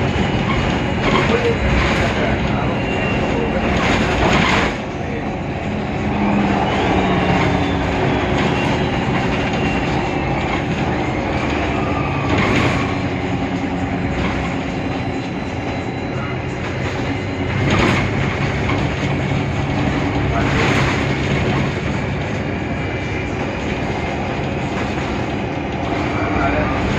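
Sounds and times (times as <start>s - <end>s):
bus body rattling: 0.0s - 26.9s
bus diesel engine running: 0.0s - 26.9s.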